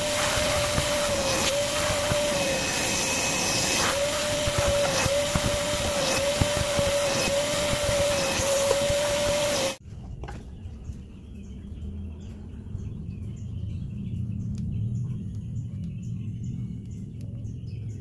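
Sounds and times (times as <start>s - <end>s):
vacuum cleaner motor whine: 0.0s - 9.8s.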